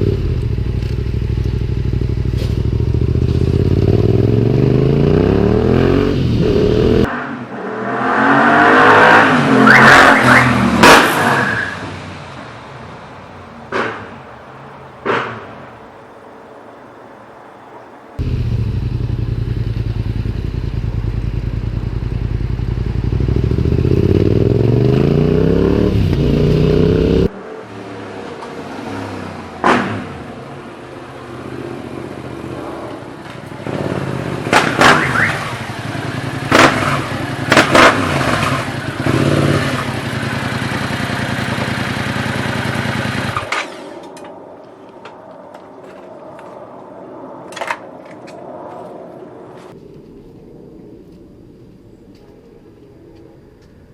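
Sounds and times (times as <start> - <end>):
motorcycle engine running loud: 0.0 - 7.1, 18.2 - 27.3, 33.6 - 43.5.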